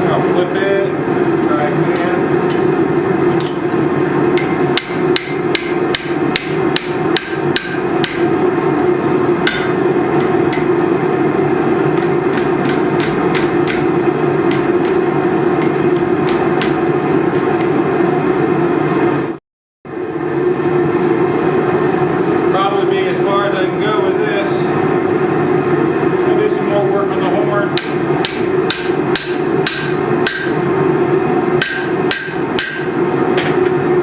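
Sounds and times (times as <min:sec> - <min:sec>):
hammer striking steel on anvil: 0:04.4 - 0:10.8, 0:12.0 - 0:13.9, 0:14.5 - 0:15.0, 0:15.6 - 0:16.8, 0:27.8 - 0:30.6, 0:31.6 - 0:33.6.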